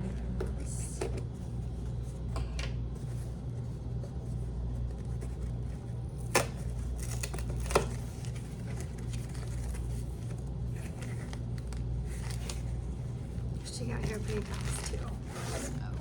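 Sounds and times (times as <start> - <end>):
steady low hum: 0.0 - 16.0
parcel rustling: 6.9 - 16.0.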